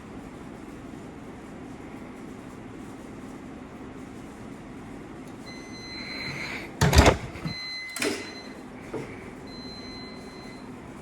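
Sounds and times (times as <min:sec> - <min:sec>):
washing machine beeps: 0:05.4 - 0:11.0.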